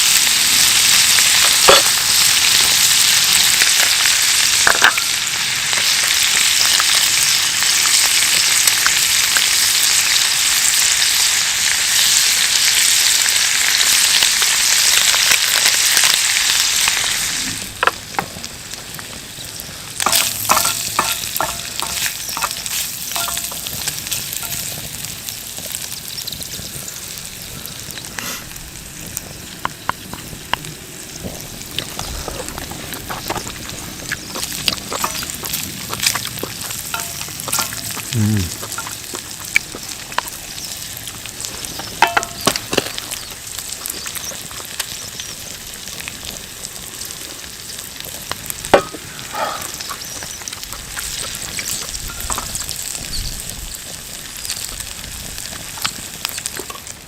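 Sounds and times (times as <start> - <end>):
food sizzling in a pan: 0.0 - 57.0.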